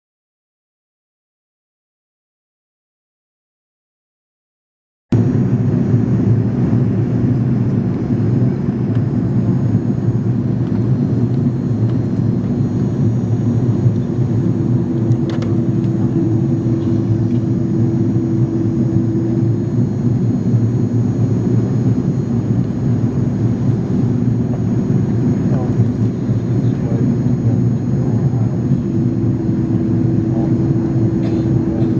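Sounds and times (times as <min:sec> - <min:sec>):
jet engines rumbling: 0:05.2 - 0:31.9.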